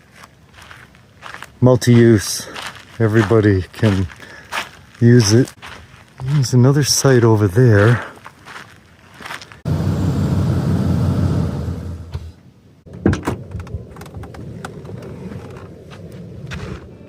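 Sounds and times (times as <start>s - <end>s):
vehicle rumbling: 9.2s - 17.0s.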